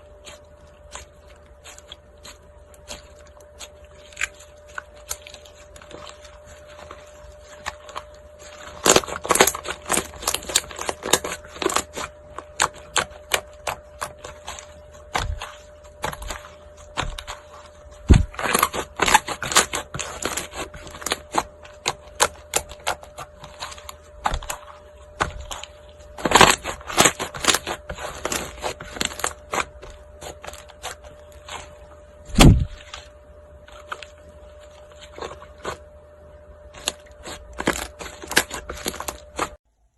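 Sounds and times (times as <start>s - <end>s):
faint steady hum: 0.0s - 39.9s
slime crackling and popping: 0.1s - 24.6s, 25.2s - 31.7s.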